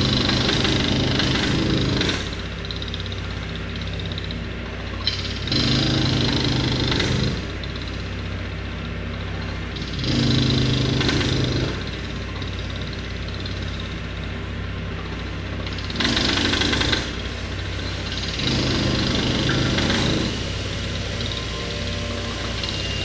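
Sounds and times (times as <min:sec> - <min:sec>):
machinery engine running: 0:11.7 - 0:23.0.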